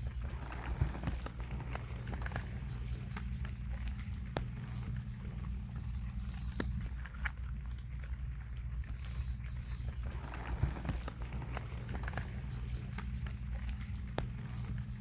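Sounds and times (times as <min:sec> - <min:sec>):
rabbits chewing: 0:00.0 - 0:15.0
faint high chirps: 0:01.6 - 0:06.9, 0:08.5 - 0:15.0.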